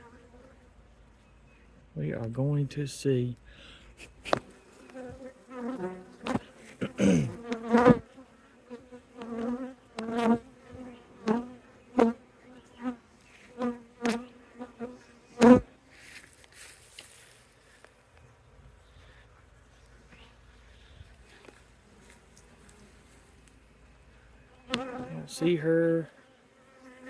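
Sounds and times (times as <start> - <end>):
bees buzzing: 4.1 - 15.8, 20.2 - 27.0.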